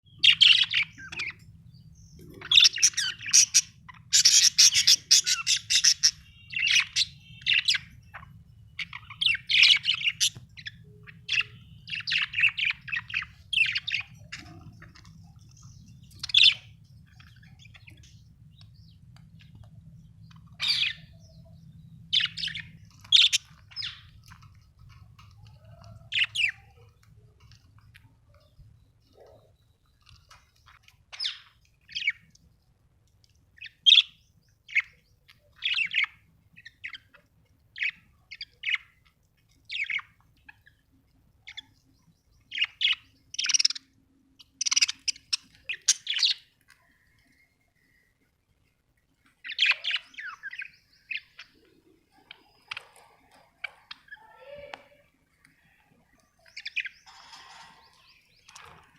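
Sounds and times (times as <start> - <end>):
budgerigars chirping: 0.2 - 1.5, 2.2 - 18.6, 20.3 - 21.2, 22.0 - 25.3, 33.6 - 37.2, 39.7 - 40.7, 42.4 - 46.5, 49.4 - 54.1, 56.4 - 58.8.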